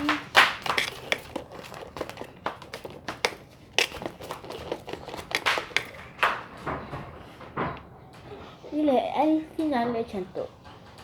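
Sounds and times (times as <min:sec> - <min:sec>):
slime being stirred: 0:00.0 - 0:06.5.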